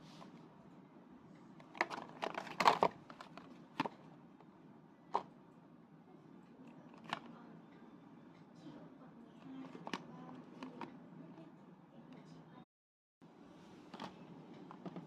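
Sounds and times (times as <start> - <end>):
crinkling and crackling: 1.6 - 4.0.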